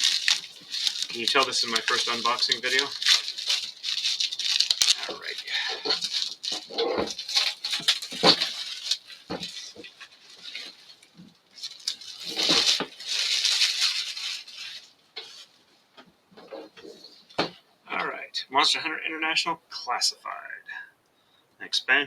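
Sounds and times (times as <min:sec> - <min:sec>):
cardboard rustling and scraping: 0:00.0 - 0:15.6.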